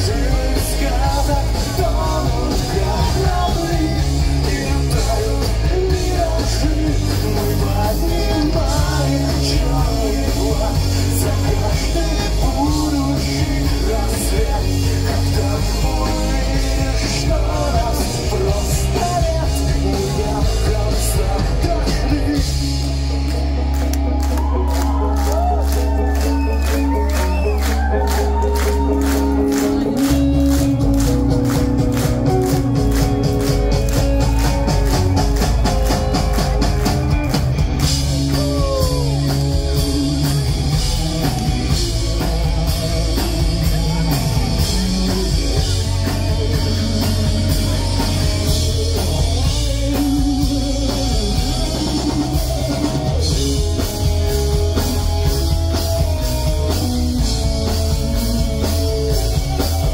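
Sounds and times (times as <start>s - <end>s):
fast drumming: 0.0s - 59.9s
pop-punk band playing: 0.0s - 59.9s.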